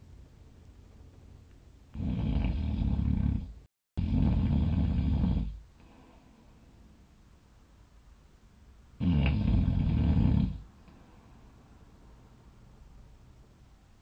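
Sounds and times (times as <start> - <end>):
person snoring loudly: 1.9 - 5.6, 9.0 - 10.6
faint breathing: 5.4 - 7.0, 10.8 - 11.8.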